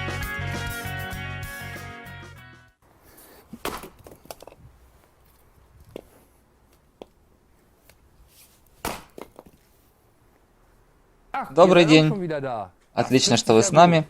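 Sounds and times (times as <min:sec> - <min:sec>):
rustles: 0:02.8 - 0:11.1.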